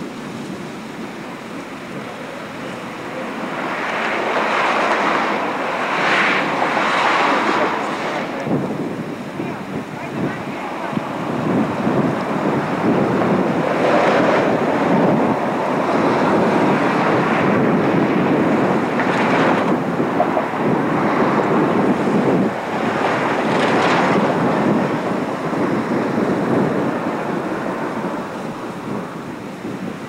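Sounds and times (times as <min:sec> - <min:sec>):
storm wind buffeting microphone: 0:00.0 - 0:30.0.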